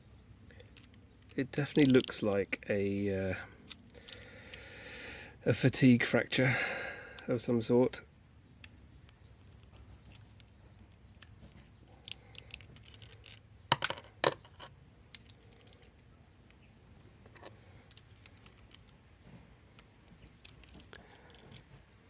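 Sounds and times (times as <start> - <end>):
metallic clicks and clinks: 0.6 - 2.3, 12.0 - 16.0, 20.1 - 21.8.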